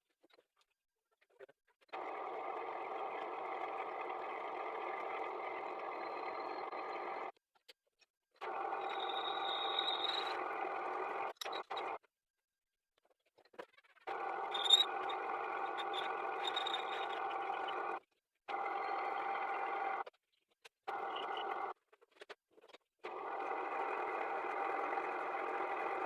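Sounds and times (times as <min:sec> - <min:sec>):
lathe running: 0:02.0 - 0:07.3, 0:08.4 - 0:12.0, 0:14.2 - 0:20.0, 0:23.1 - 0:26.0
thin high whine: 0:08.6 - 0:12.0.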